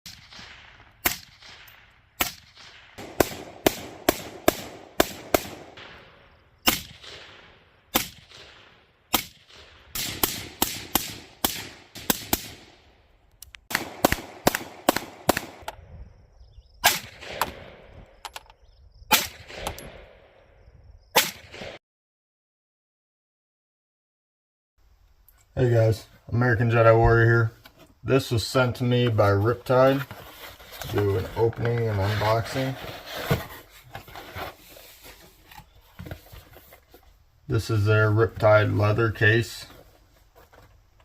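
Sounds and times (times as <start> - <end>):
gunshots with echo: 0.1 - 12.9, 13.7 - 15.7, 16.8 - 18.1, 19.1 - 20.4, 21.2 - 21.8.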